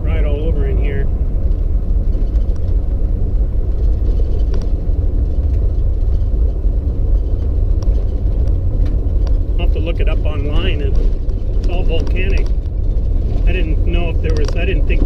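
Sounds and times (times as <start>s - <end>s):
vehicle engine and road rumble: 0.0s - 15.0s.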